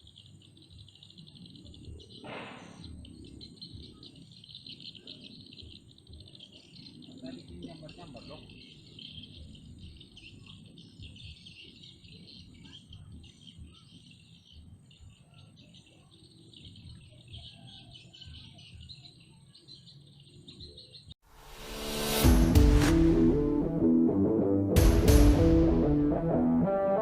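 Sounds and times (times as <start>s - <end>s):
insects chirping: 0.0s - 20.6s
birds chirping: 0.0s - 21.2s
low rumble: 21.6s - 26.7s.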